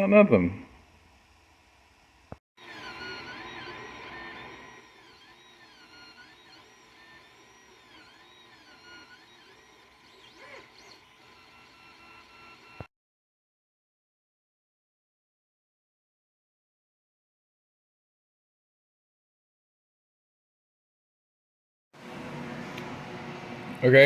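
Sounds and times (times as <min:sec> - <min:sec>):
stepper motors whining: 0:01.2 - 0:12.9.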